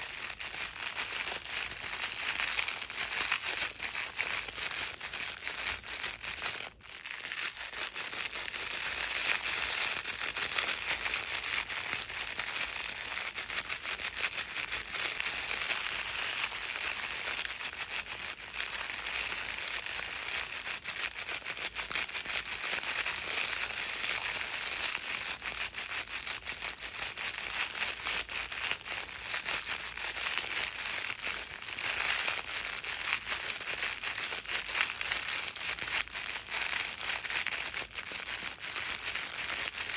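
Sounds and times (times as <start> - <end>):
crinkle book rustling: 0.0 - 11.3.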